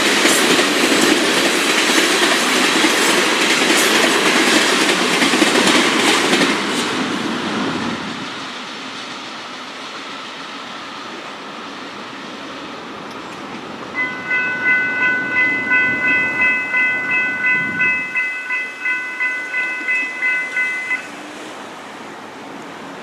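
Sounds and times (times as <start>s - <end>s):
freight train rumbling: 0.0s - 23.0s
crossing bell ringing: 14.0s - 21.3s.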